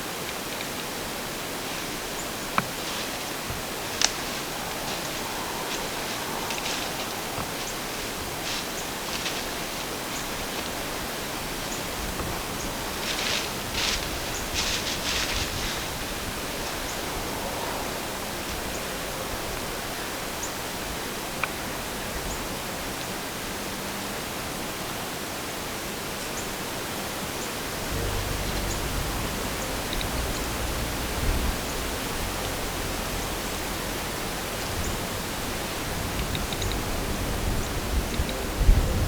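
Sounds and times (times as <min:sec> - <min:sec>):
outdoor air hiss: 0:00.0 - 0:39.0
wind buffeting microphone: 0:03.3 - 0:21.1, 0:27.4 - 0:39.0.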